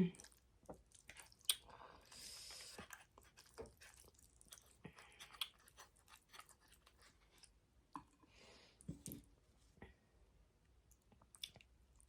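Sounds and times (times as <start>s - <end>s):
wet chewing mouth clicks: 0.2s - 1.8s, 2.8s - 7.0s.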